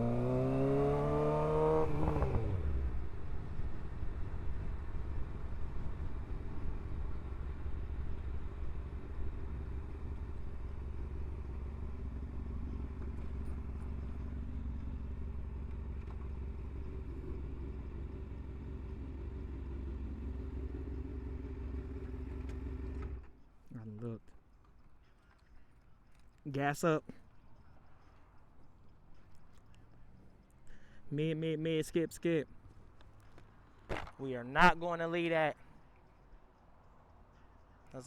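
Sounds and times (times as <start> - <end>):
motorcycle engine idling: 2.8 - 23.4.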